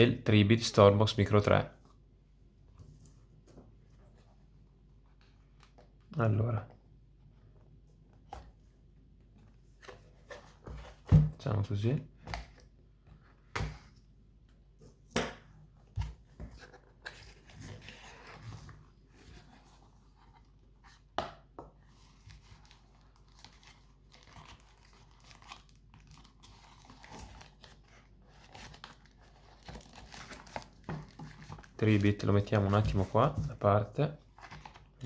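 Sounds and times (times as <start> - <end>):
cardboard and wrapping rustling: 16.0 - 21.1, 21.8 - 35.0.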